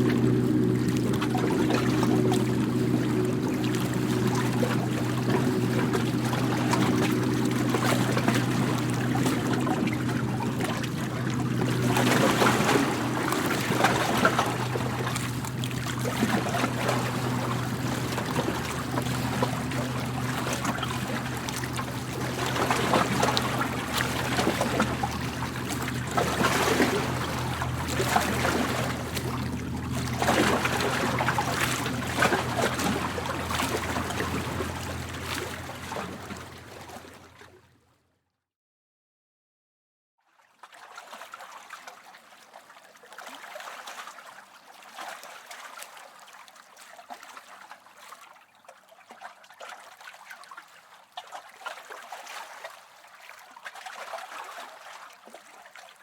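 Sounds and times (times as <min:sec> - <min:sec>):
steady low hum: 0:00.0 - 0:37.1
waves washing in: 0:00.0 - 0:37.3.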